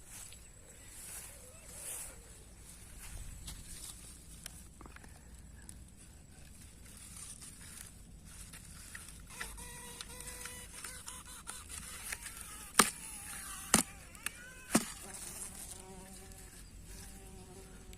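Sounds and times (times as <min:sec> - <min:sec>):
insect buzzing in flight: 0:09.2 - 0:17.9.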